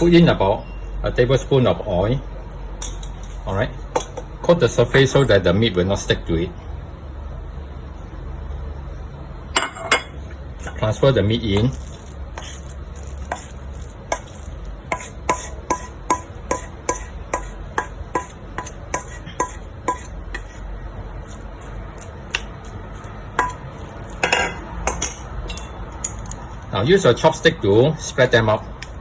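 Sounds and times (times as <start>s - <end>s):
utensil clinking on plate: 23.4s - 26.4s.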